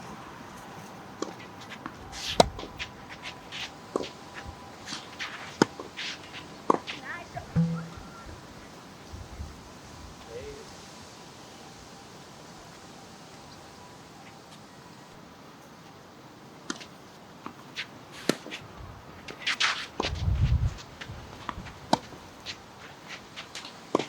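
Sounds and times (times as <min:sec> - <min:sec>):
sharp knocks on court: 0:07.6 - 0:08.2
wind rumble on microphone: 0:20.0 - 0:21.8.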